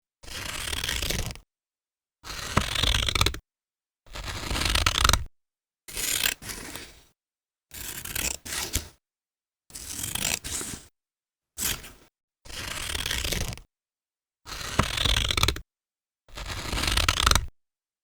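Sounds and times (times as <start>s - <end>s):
scissors cutting paper: 0.3s - 1.4s, 2.2s - 3.4s, 4.1s - 5.3s, 5.9s - 7.0s, 7.7s - 9.0s, 9.8s - 10.9s, 11.6s - 13.7s, 14.5s - 15.6s, 16.4s - 17.5s.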